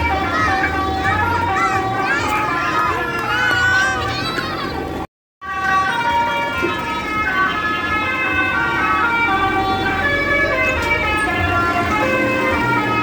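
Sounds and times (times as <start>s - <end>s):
multi-tone bus horn tune: 4.9s - 13.0s.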